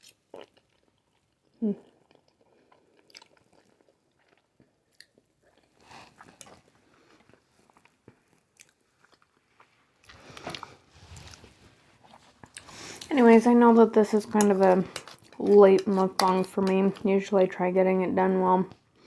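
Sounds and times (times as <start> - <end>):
person chewing food: 0.0 - 13.2, 14.2 - 16.3.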